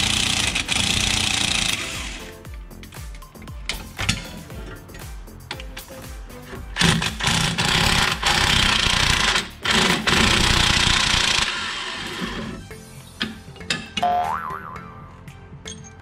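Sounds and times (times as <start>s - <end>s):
impact wrench rattling: 0.0s - 2.0s, 6.8s - 11.5s.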